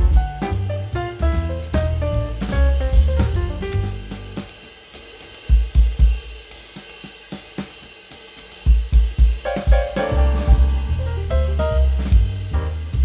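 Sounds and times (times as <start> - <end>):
heavy bass drum hits: 0.0 - 4.6, 9.0 - 13.0
cymbals and hi-hat: 0.0 - 13.0.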